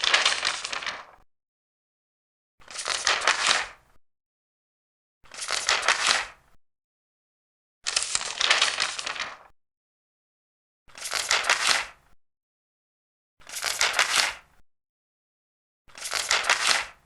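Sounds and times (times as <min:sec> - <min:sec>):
paper pages turning: 0:00.0 - 0:01.2, 0:02.6 - 0:03.8, 0:05.3 - 0:06.4, 0:07.9 - 0:09.5, 0:10.9 - 0:12.0, 0:13.4 - 0:14.4, 0:15.9 - 0:17.0.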